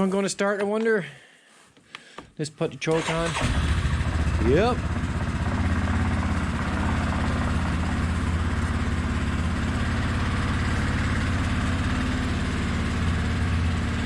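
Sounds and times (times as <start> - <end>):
quad engine idling: 3.0 - 14.0.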